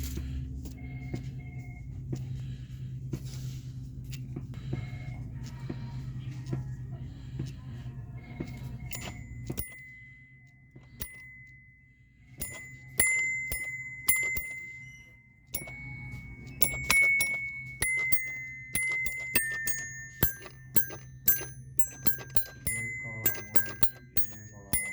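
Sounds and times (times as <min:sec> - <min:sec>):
small metal bell dinging: 0:08.4 - 0:24.9.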